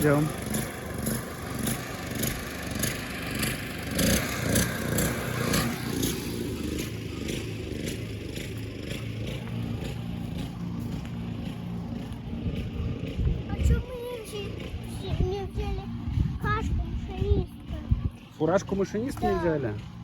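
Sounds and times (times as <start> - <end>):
single-cylinder engine running: 0.0 - 20.0
footsteps walking: 6.0 - 18.4.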